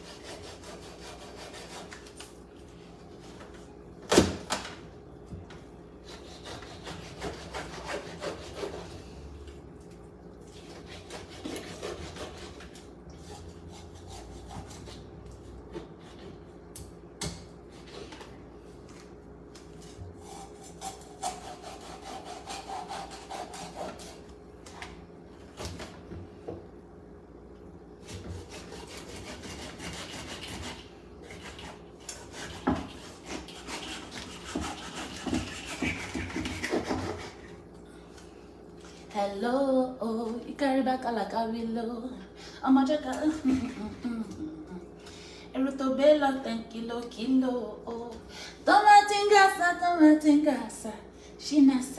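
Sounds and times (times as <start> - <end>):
knife scraping fish scales: 0.0 - 2.3, 10.5 - 15.1, 20.2 - 24.3, 28.4 - 37.5
steady low hum: 36.6 - 51.9.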